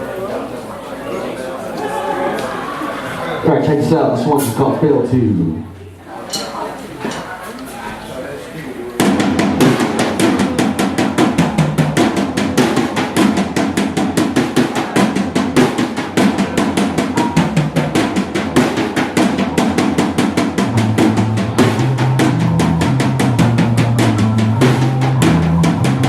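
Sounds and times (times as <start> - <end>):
drum kit snare and cymbals: 9.0 - 26.0
live rock band playing: 9.0 - 26.0
low bass notes: 20.6 - 26.0.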